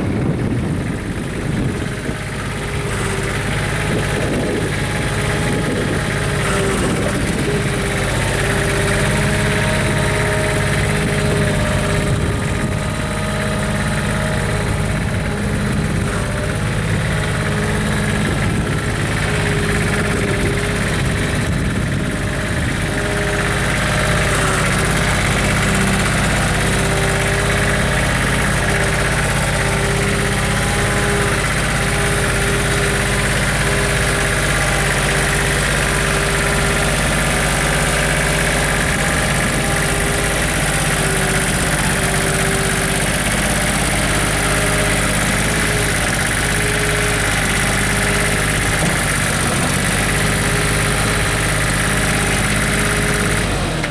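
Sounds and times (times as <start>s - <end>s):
tractor engine idling: 0.0s - 53.9s.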